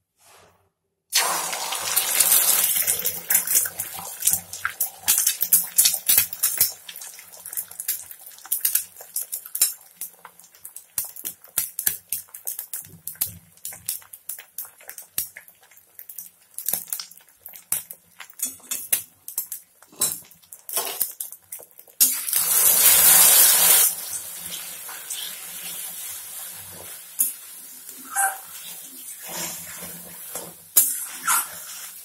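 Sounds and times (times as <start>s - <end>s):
eggs sizzling in hot oil: 1.1s - 32.0s
utensil beating eggs in bowl: 2.0s - 19.6s.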